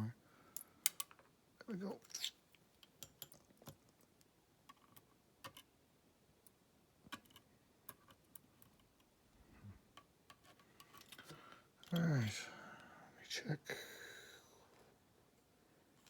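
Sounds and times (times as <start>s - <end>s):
small metal pins clicking: 0.6s - 1.3s.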